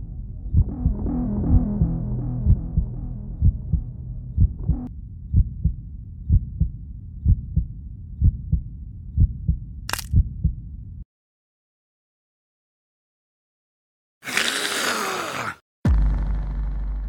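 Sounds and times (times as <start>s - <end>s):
heartbeat thumps: 0.0s - 10.7s
low rumble: 0.0s - 11.0s.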